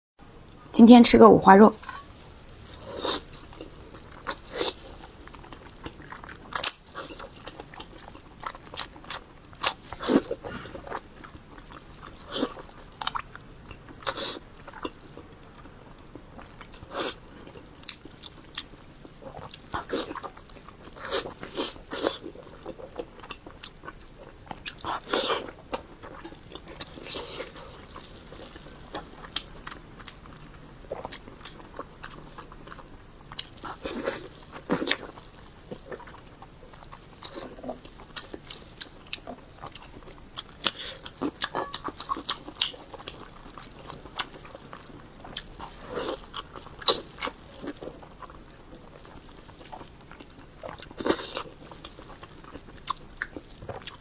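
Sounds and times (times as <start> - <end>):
chewing and biting food: 1.8 - 54.0.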